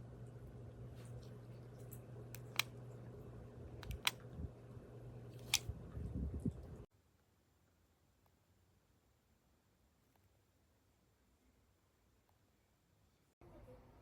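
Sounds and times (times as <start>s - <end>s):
low hum: 0.0s - 6.9s.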